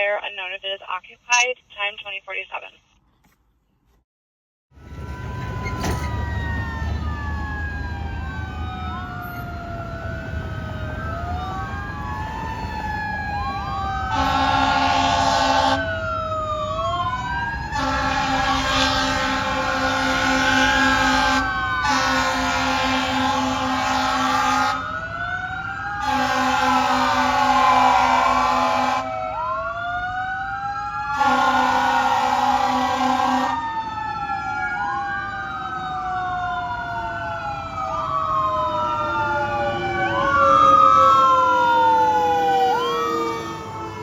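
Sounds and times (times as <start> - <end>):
sirens wailing: 4.7 - 44.0
air horn blasts: 14.1 - 15.8, 17.7 - 24.8, 26.0 - 29.1, 31.1 - 33.6.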